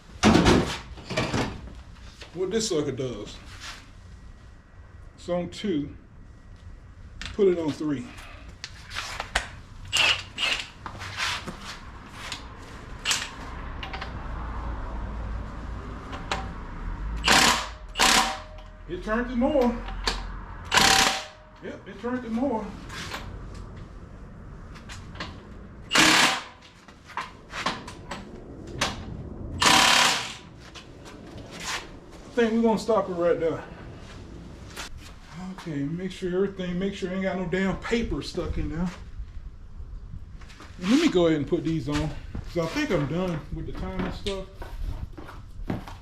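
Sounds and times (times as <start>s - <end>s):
power tool running on a bolt: 17.2s - 18.6s, 20.7s - 21.4s, 29.6s - 30.4s
impact wrench hammering: 17.2s - 18.8s, 20.0s - 21.5s, 25.9s - 26.6s, 29.6s - 30.4s.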